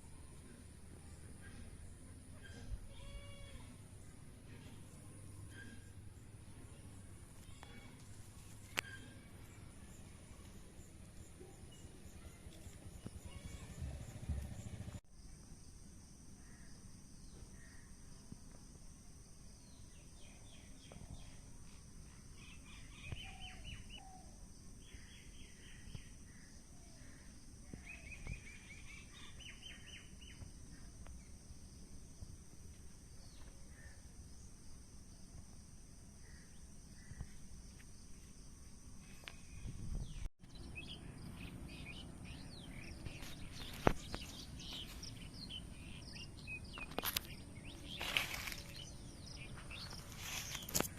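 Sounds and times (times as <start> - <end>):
small birds chirping: 0.0 - 15.0, 19.6 - 31.6, 39.0 - 50.9.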